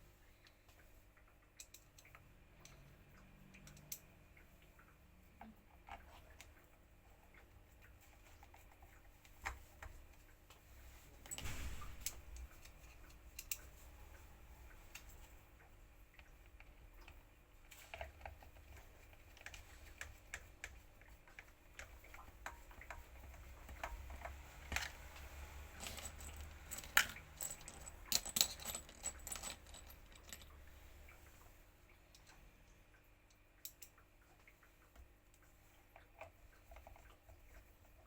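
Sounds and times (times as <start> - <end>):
small hard parts clicking: 16.2 - 30.7.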